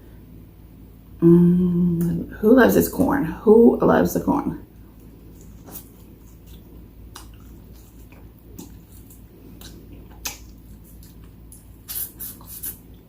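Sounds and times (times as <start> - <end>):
chewing corn on the cob: 5.0 - 13.0.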